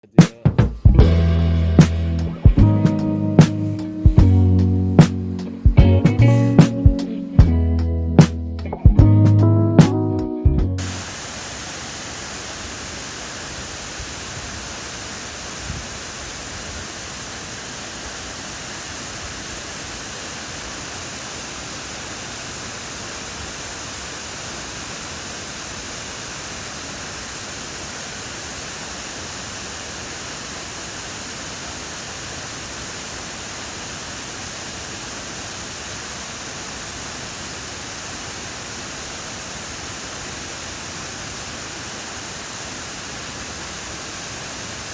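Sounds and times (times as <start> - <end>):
waterfall rushing: 10.8 - 44.9.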